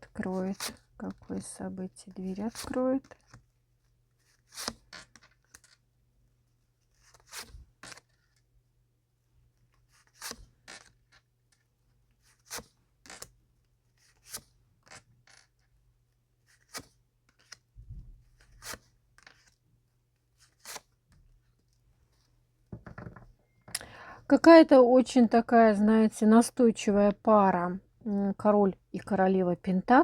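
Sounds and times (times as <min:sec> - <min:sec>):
cards snapping and sliding: 0:04.5 - 0:05.8, 0:07.0 - 0:08.2, 0:10.0 - 0:10.9, 0:12.3 - 0:13.3, 0:14.1 - 0:15.5, 0:16.5 - 0:17.6, 0:18.4 - 0:19.6, 0:20.4 - 0:20.9.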